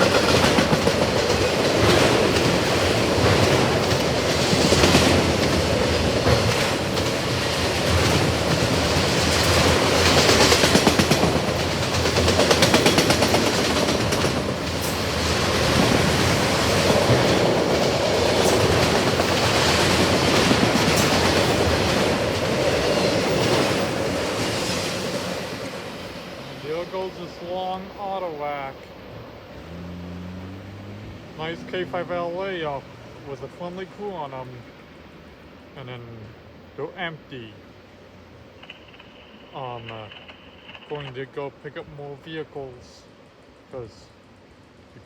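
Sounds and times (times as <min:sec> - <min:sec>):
train wheels clacking over rail joints: 0:00.0 - 0:25.8, 0:38.6 - 0:41.2.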